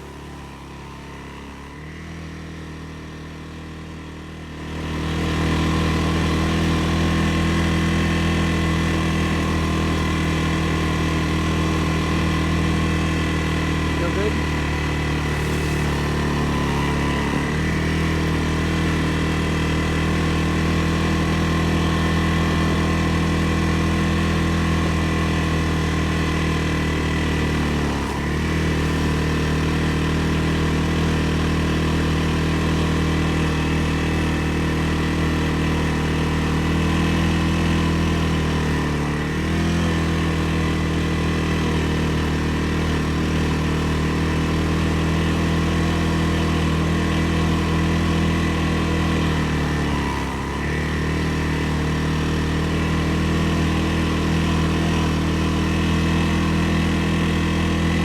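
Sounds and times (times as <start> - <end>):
atv engine running: 0.0 - 58.0.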